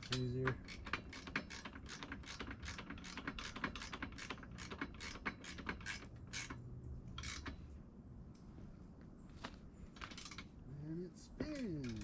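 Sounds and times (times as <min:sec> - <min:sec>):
wrench clicking on a bolt: 0:00.0 - 0:06.6, 0:07.2 - 0:07.6, 0:11.4 - 0:12.0.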